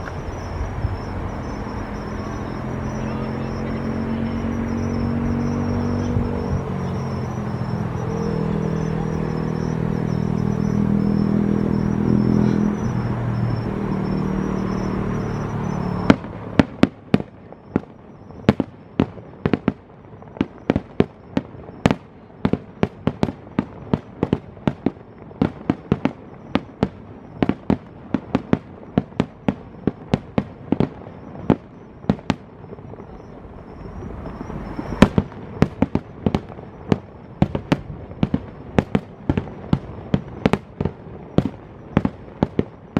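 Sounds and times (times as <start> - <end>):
droning hum: 0.0 - 16.6, 33.0 - 35.2
fireworks bangs and crackles: 0.0 - 42.9.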